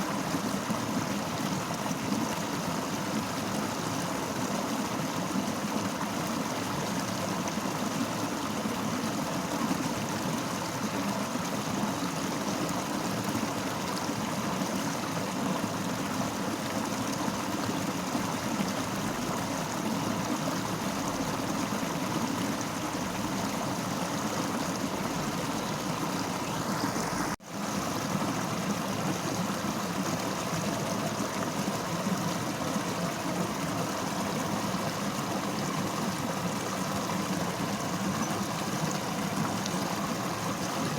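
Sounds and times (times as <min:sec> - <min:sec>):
river rushing: 0:15.0 - 0:31.8.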